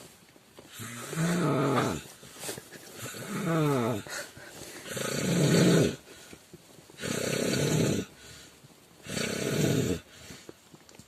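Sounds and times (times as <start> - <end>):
man snoring: 0.7 - 2.1, 3.0 - 4.2, 4.8 - 6.0, 7.0 - 8.1, 9.0 - 10.1.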